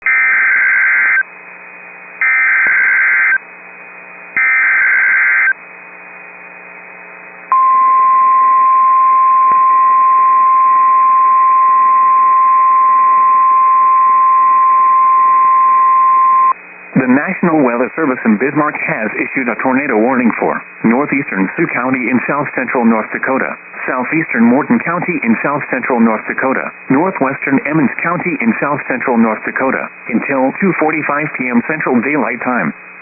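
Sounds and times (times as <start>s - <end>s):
steady warning alarm tone: 2.2s - 3.4s
radio hiss: 16.5s - 33.0s.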